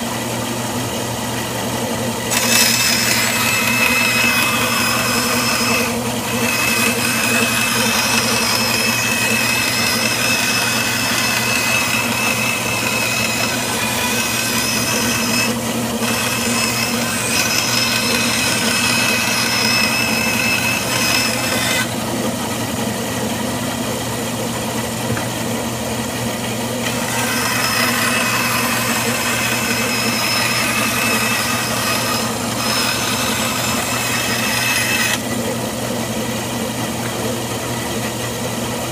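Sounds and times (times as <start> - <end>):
bandsaw cutting with whine: 0.0 - 38.9.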